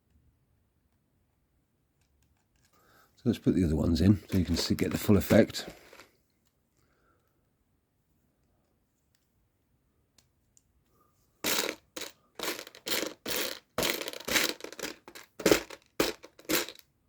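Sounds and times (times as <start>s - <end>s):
plastic pieces rattling and scraping: 4.3s - 6.1s, 11.4s - 16.8s.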